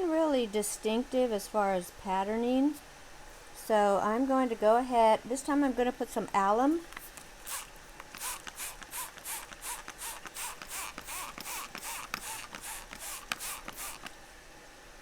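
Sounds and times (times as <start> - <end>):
spray bottle spritzing: 6.9 - 14.1.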